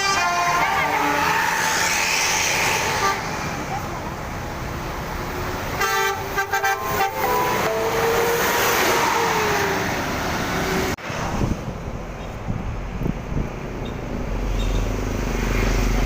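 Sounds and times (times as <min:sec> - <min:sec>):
musical air horn: 0:00.0 - 0:01.5, 0:05.8 - 0:09.6
traffic and bus engine noise: 0:00.0 - 0:16.0.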